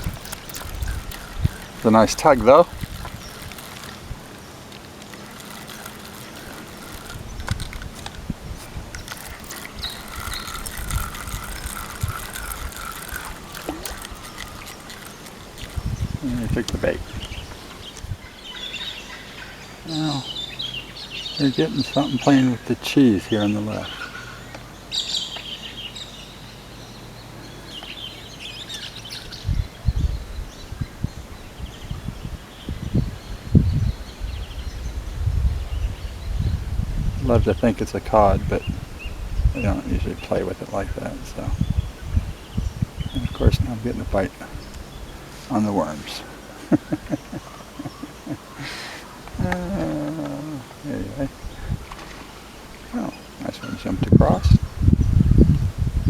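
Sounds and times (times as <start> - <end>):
sharp clicks and knocks: 0.0 - 16.8
small birds chirping: 0.0 - 56.0.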